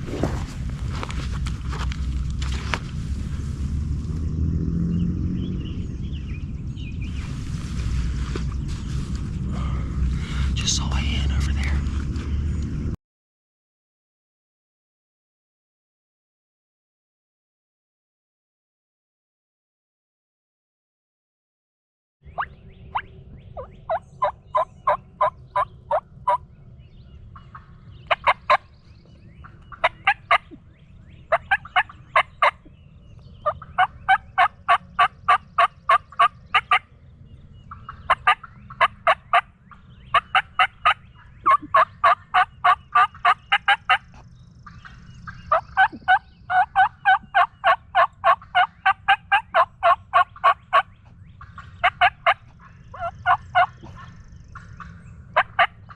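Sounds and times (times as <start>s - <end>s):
turkey yelping: 23.6s - 26.4s, 28.1s - 28.6s, 29.7s - 30.6s, 31.3s - 32.6s, 33.4s - 36.8s, 37.8s - 39.4s, 40.1s - 44.1s, 45.5s - 50.9s, 51.5s - 54.1s, 55.4s - 55.8s.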